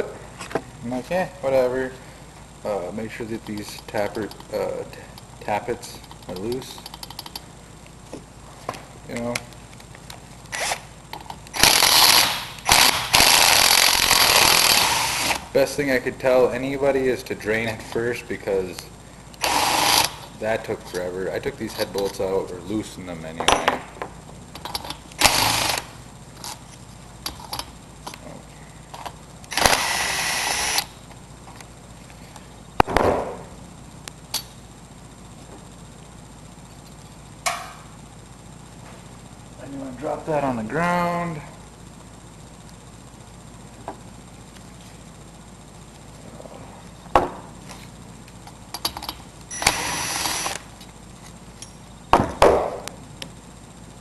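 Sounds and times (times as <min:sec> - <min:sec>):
power tool whirring: 0:10.5 - 0:10.9, 0:11.5 - 0:15.5, 0:19.4 - 0:20.4, 0:25.2 - 0:26.0, 0:29.5 - 0:31.0, 0:49.5 - 0:50.7.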